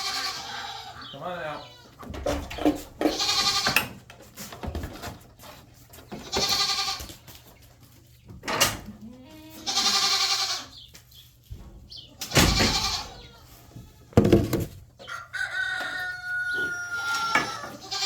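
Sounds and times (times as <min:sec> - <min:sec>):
goats bleating: 0:00.0 - 0:02.0, 0:03.0 - 0:03.8, 0:06.2 - 0:07.2, 0:08.9 - 0:10.7, 0:12.3 - 0:14.2, 0:16.0 - 0:18.0
short knocks: 0:14.2 - 0:14.8.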